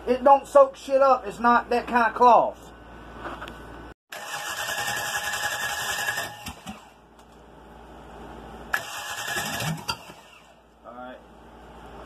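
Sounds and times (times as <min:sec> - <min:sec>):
starter cranking engine: 0:04.1 - 0:06.9, 0:08.7 - 0:10.6.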